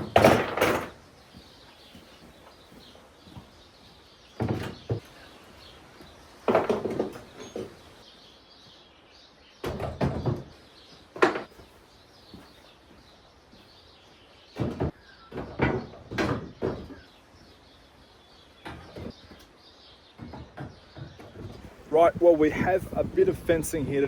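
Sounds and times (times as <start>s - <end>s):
tools knocking and clunking: 0.0s - 2.1s, 4.4s - 5.1s, 6.5s - 7.8s, 14.6s - 17.0s.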